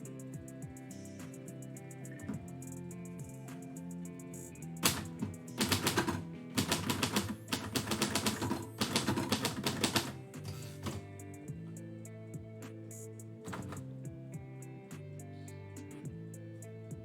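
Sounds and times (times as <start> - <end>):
background music: 0.0 - 17.0
typewriter keys striking: 4.8 - 11.0.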